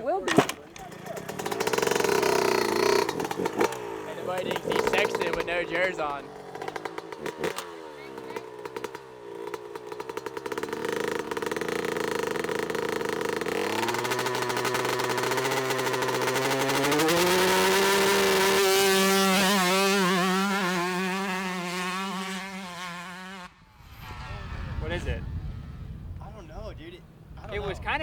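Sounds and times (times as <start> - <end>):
motocross bike engine accelerating: 0.0 - 28.0.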